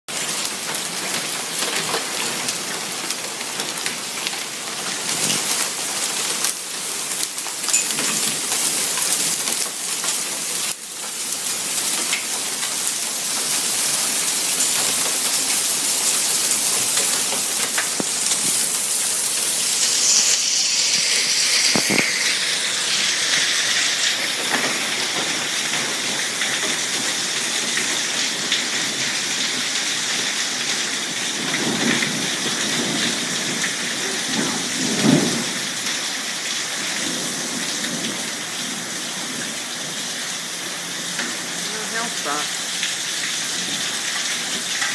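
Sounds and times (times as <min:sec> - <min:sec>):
hail and rain pelting down: 0:00.1 - 0:44.9
hailstones clicking: 0:00.2 - 0:36.0.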